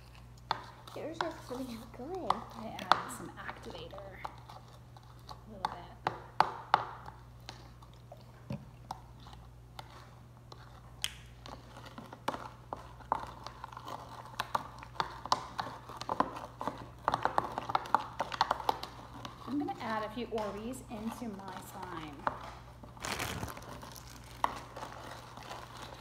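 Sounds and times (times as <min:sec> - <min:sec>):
slime squelching and clicking: 0:10.6 - 0:20.5.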